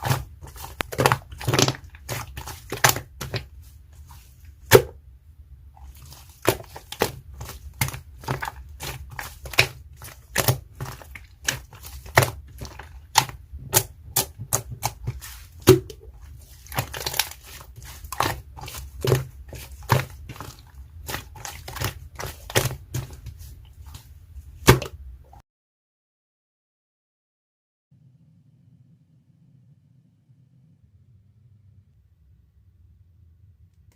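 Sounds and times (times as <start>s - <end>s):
slime crackling: 0.0s - 4.9s, 5.8s - 24.1s.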